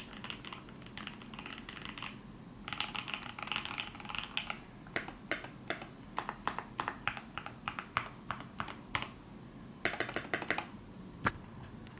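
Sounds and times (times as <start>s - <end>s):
mechanical keyboard typing: 0.0s - 9.2s, 9.8s - 10.7s.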